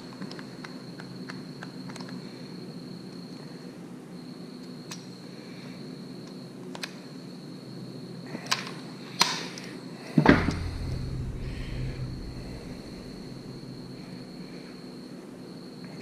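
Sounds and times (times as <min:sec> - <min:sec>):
low hum: 0:10.3 - 0:15.8
faint high whine: 0:10.3 - 0:16.0.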